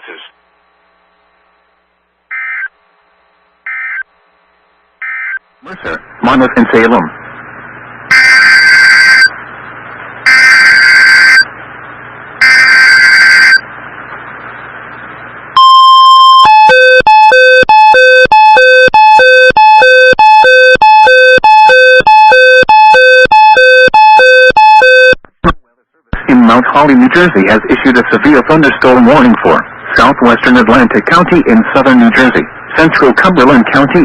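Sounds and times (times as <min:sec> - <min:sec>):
harsh buzzing data bursts: 0:08.1 - 0:09.3, 0:10.2 - 0:11.5, 0:12.4 - 0:13.6
short steady beep: 0:15.6 - 0:25.2.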